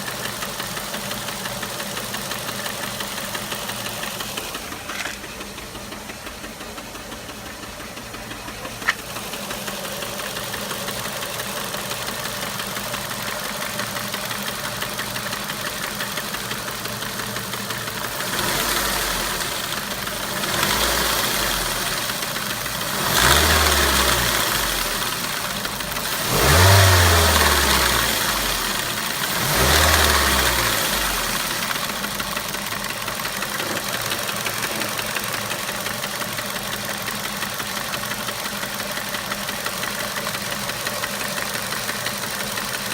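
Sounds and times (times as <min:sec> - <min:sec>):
car engine idling with tapping: 0:00.0 - 0:42.9
engine revving: 0:17.9 - 0:36.3.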